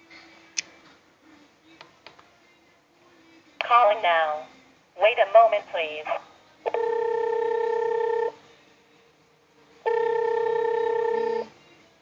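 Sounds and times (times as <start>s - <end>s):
electronic doorbell ringing tone: 6.7s - 8.4s, 9.9s - 11.5s.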